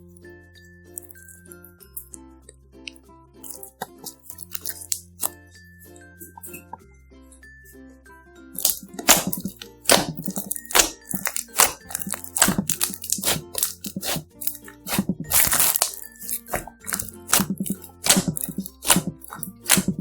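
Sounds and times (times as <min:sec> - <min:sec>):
light background music: 0:00.0 - 0:20.0
slime popping and crackling: 0:03.4 - 0:05.3, 0:08.6 - 0:20.0.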